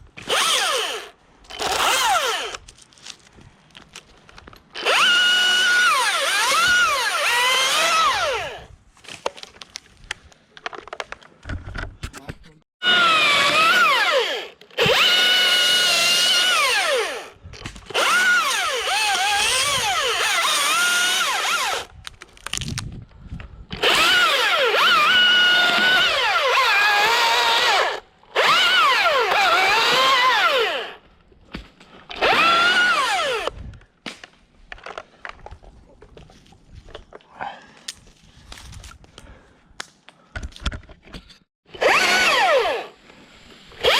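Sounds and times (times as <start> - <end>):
battery chainsaw cutting wood: 0.2 - 2.6, 4.8 - 8.7, 12.8 - 21.9, 23.8 - 31.0, 32.1 - 33.5, 41.7 - 43.0.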